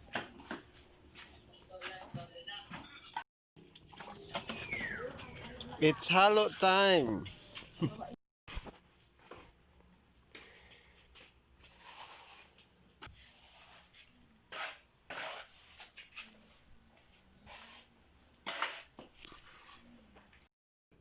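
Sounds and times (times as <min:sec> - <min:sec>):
shovel scraping cement: 0:11.6 - 0:20.0.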